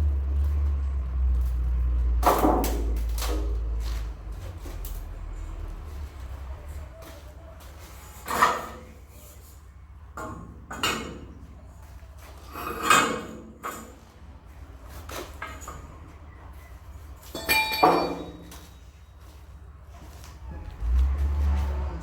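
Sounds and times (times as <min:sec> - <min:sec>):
knocks and clinks from handling: 0:17.2 - 0:19.0.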